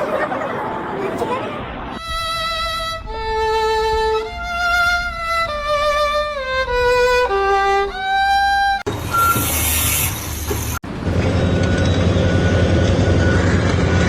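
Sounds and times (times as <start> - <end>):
slow violin melody: 2.0 - 8.9.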